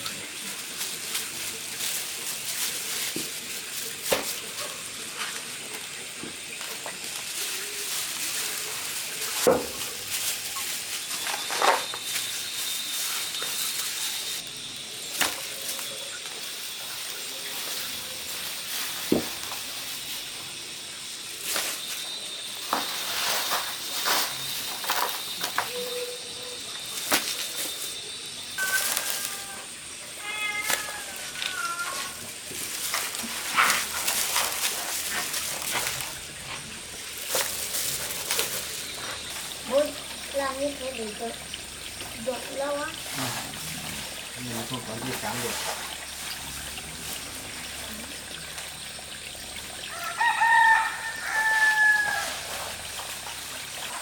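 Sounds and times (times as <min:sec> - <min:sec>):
thin steady high tone: 0:10.2 - 0:32.1, 0:34.0 - 0:43.7.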